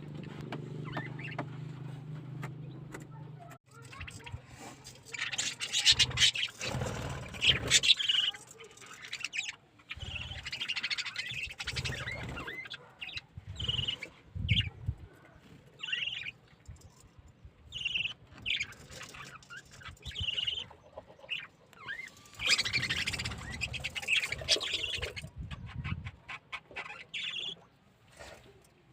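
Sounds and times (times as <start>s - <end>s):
budgerigars chirping and chattering: 0.8s - 1.6s, 3.7s - 14.9s, 15.8s - 16.4s, 17.7s - 27.7s.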